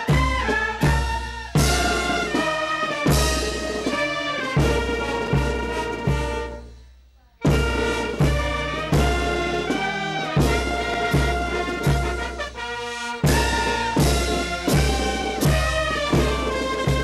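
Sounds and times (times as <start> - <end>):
heavy drum beat: 0.0 - 6.6, 7.4 - 17.0
brass orchestral march: 0.0 - 6.8, 7.4 - 17.0.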